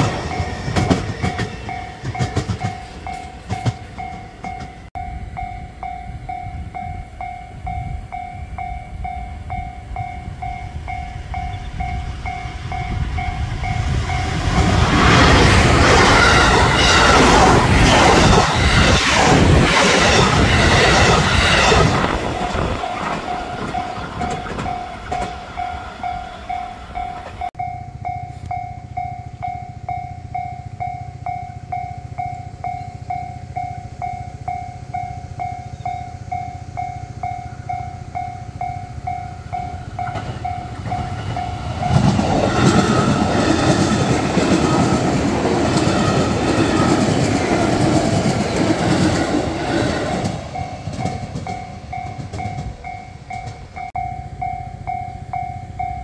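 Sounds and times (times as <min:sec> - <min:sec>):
train wheels clattering: 0:00.0 - 0:04.9, 0:10.4 - 0:27.6, 0:39.0 - 0:54.4
level crossing bell ringing: 0:50.4 - 0:56.0.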